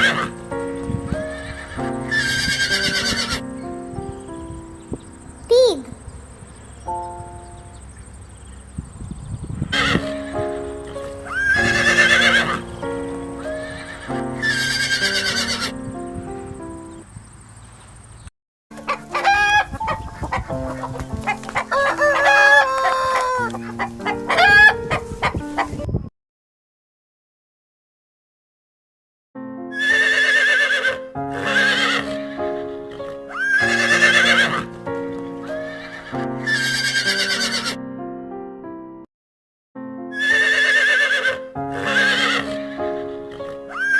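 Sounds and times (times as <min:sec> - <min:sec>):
horse whinnying: 0:00.0 - 0:00.3, 0:01.3 - 0:03.4, 0:11.3 - 0:12.6, 0:13.6 - 0:15.8, 0:29.8 - 0:32.5, 0:33.3 - 0:34.7, 0:35.7 - 0:37.8, 0:40.2 - 0:43.9
background music: 0:00.0 - 0:05.6, 0:06.9 - 0:08.0, 0:09.7 - 0:17.0, 0:18.7 - 0:26.0, 0:29.4 - 0:39.0, 0:39.8 - 0:43.9
simple melody of short notes: 0:06.8 - 0:07.9
hoof clops: 0:18.8 - 0:24.4.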